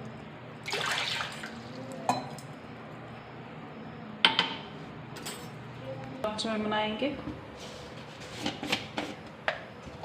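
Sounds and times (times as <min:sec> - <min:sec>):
water splashing into saucepan: 0:00.7 - 0:01.8
kitchenware clinking: 0:02.1 - 0:02.5.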